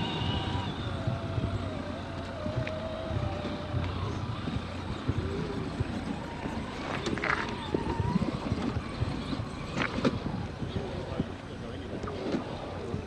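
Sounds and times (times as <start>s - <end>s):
toy truck motor whine: 0.0s - 10.6s.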